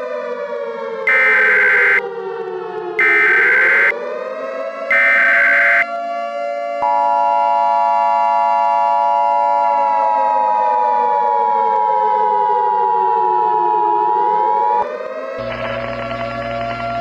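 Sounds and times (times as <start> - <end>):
screeching data bursts: 1.1 - 2.0, 3.0 - 3.9, 4.9 - 5.9
two-tone alert signal: 1.1 - 2.0, 3.0 - 3.9, 4.9 - 5.9
wailing siren: 1.1 - 2.0, 3.0 - 4.0, 4.9 - 5.9.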